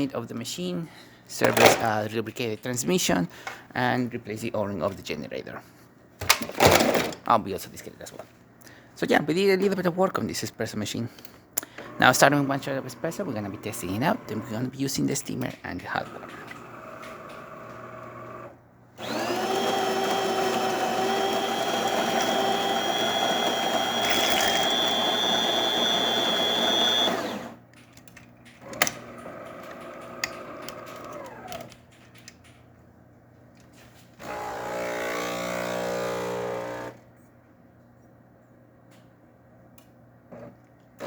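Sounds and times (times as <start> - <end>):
coffee grinder whine: 16.1 - 27.6
motor whirring: 16.1 - 27.6
pump buzzing: 19.0 - 27.5.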